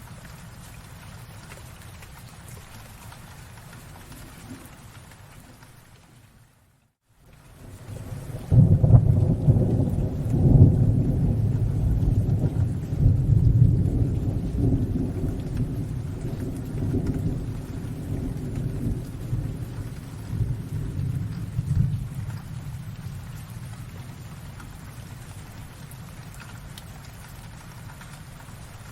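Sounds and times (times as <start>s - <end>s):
faint rain: 0.0s - 28.9s
thunder rumbling: 7.6s - 26.2s.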